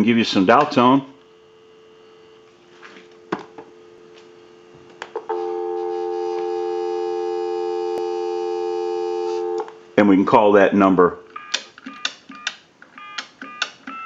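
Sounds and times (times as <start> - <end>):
telephone dial tone: 5.2 - 9.9.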